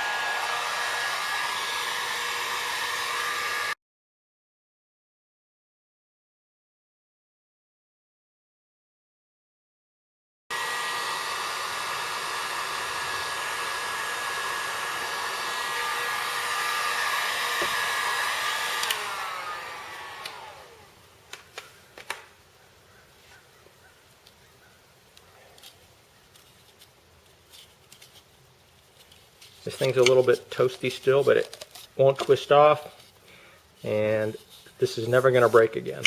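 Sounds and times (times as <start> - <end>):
fan winding down: 0.0 - 3.8, 10.5 - 21.1
heat gun blowing with whine: 0.0 - 3.8, 10.5 - 21.4.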